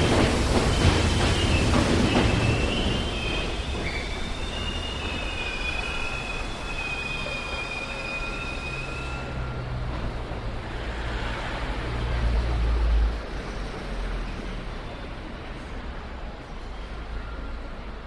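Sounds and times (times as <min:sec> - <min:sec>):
train brakes squealing: 0:00.0 - 0:10.2, 0:16.5 - 0:18.0.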